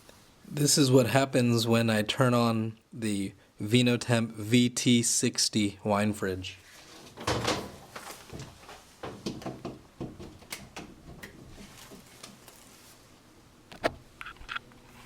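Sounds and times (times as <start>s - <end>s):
handling knocks and rattles: 7.0s - 12.8s.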